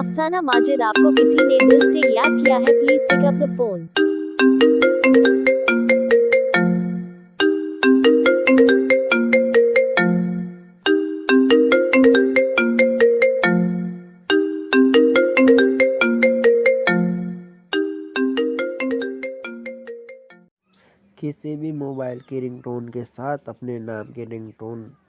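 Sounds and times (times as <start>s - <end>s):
mobile phone ringtone melody: 0.0s - 20.5s.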